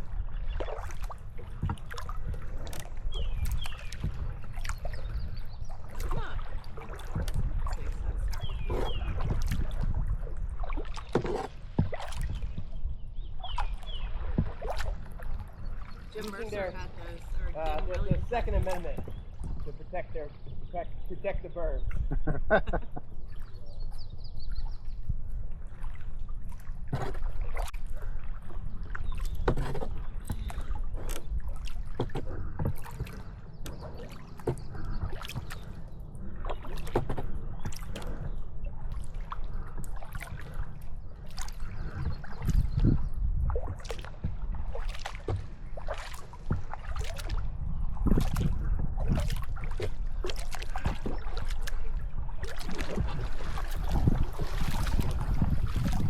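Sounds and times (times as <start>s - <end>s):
paddle splashing in water: 0.0s - 56.0s.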